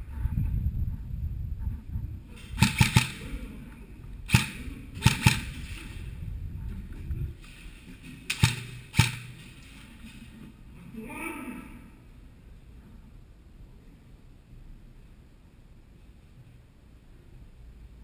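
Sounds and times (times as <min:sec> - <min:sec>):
airsoft gun shots: 0:02.4 - 0:03.3, 0:04.3 - 0:05.9, 0:08.3 - 0:09.5.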